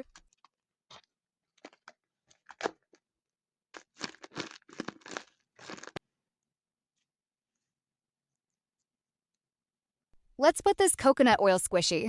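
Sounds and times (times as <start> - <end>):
plastic packaging crinkling: 0.1 - 3.0, 3.8 - 6.0.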